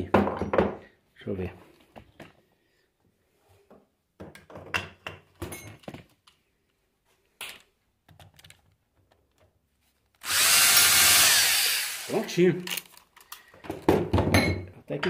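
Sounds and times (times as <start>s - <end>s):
metal parts clicking and clattering: 12.6s - 13.5s.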